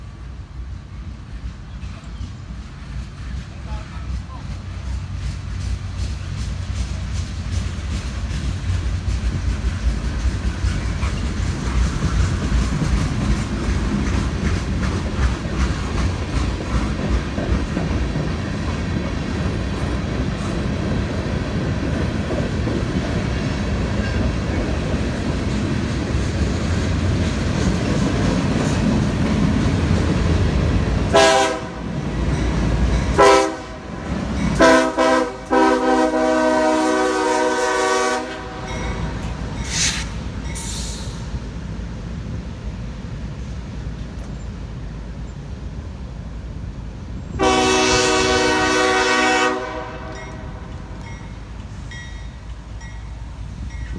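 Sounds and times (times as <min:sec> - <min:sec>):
freight train rumbling: 0:00.0 - 0:53.9
locomotive air horn blasts: 0:31.1 - 0:31.8, 0:33.2 - 0:34.0, 0:34.6 - 0:39.0, 0:47.4 - 0:50.7.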